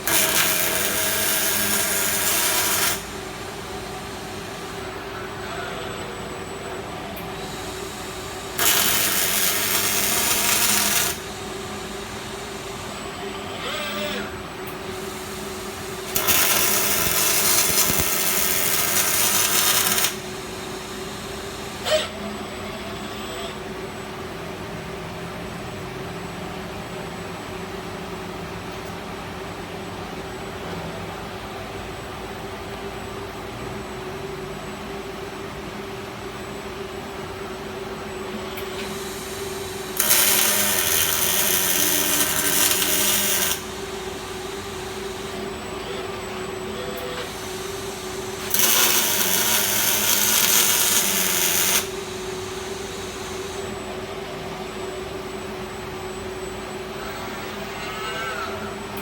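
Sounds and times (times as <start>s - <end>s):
welding arc crackling: 0.0s - 4.0s, 7.4s - 12.7s, 14.9s - 21.8s, 38.8s - 45.5s, 47.3s - 53.2s
welding equipment hum: 0.0s - 5.4s, 6.0s - 22.9s, 36.6s - 56.7s.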